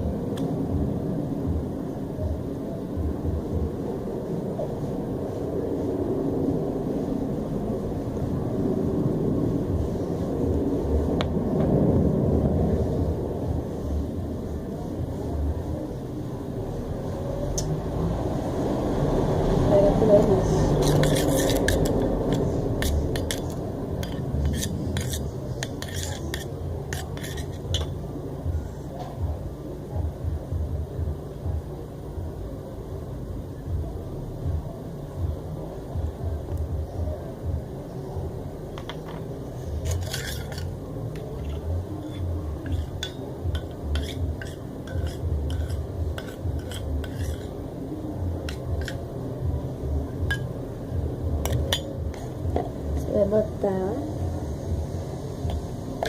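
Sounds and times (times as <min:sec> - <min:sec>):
low handling rumble: 0:00.0 - 0:56.0
utensil scraping against bowl: 0:20.5 - 0:28.0, 0:39.0 - 0:47.6, 0:48.4 - 0:49.0, 0:51.4 - 0:52.4
spoon stirring thick mixture: 0:20.6 - 0:27.9, 0:39.8 - 0:47.6, 0:48.4 - 0:49.0.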